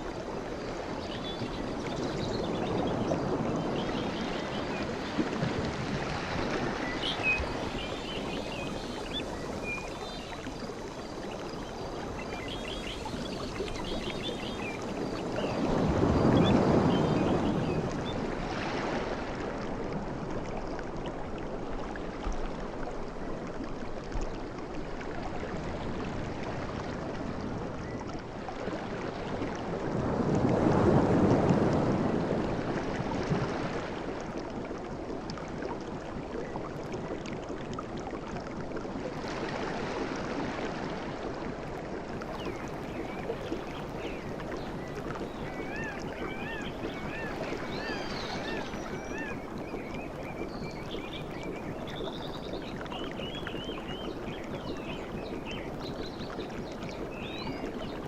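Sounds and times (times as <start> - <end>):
sea waves breaking: 29.6 - 34.2.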